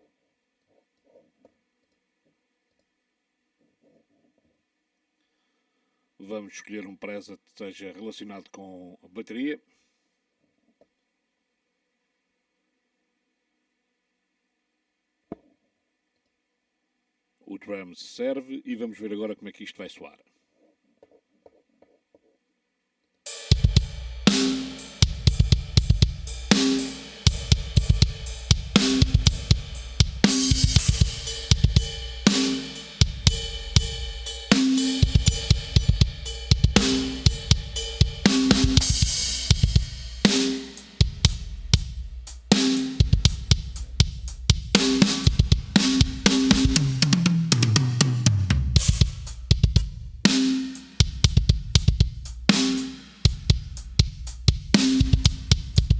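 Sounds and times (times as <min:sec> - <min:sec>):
drum kit groove: 0:23.3 - 0:55.9
tom drum fill: 0:23.3 - 0:55.9.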